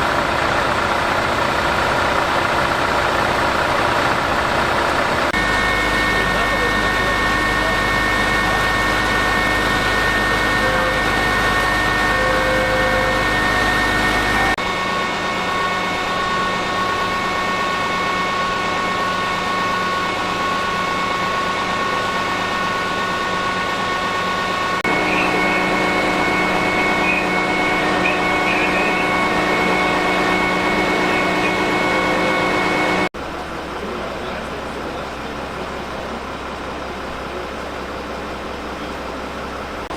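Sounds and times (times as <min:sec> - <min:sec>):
fire engine running: 0:00.0 - 0:39.9
multi-tone whine: 0:00.0 - 0:39.9.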